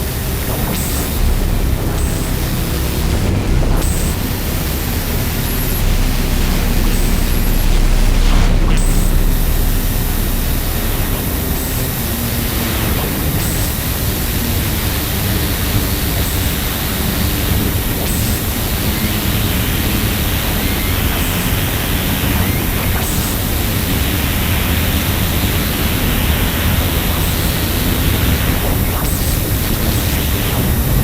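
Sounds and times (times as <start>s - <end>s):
dense wall of noise: 0.0s - 31.0s
low droning hum: 0.0s - 31.0s.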